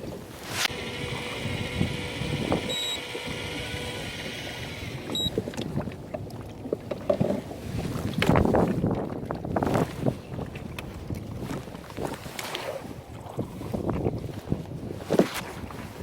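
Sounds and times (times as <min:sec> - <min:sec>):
wind buffeting microphone: 0:00.0 - 0:16.0
steady whine: 0:00.4 - 0:05.4
short high beeps: 0:01.7 - 0:05.4.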